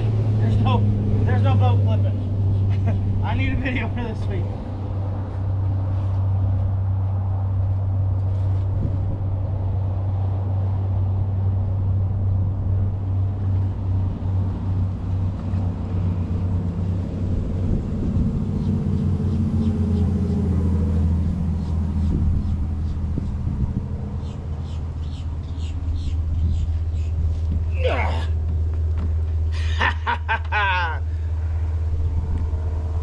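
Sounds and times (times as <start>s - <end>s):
road traffic rumble: 0.0s - 33.0s
vehicle droning: 0.0s - 33.0s.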